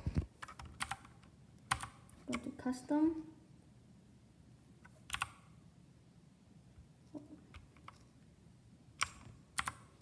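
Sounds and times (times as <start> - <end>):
mechanical keyboard clicks: 0.4 - 2.4, 4.8 - 5.4, 9.0 - 10.0.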